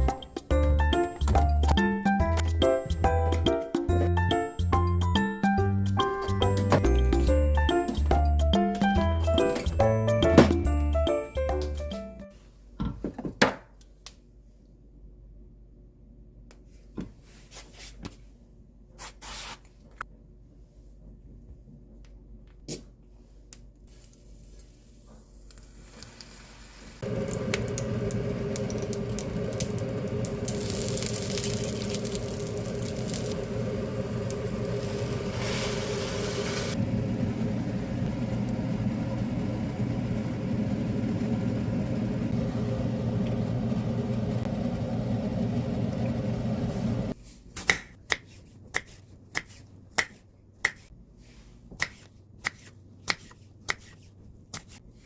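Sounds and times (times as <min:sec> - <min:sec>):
appliance motor humming: 0:31.7 - 0:47.1.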